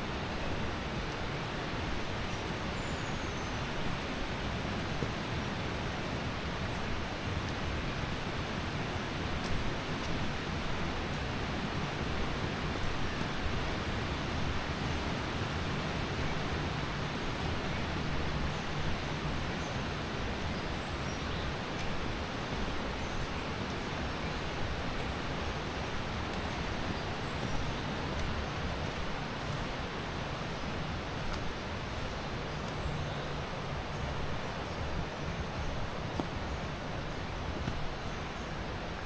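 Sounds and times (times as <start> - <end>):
water rushing: 0.0 - 39.0.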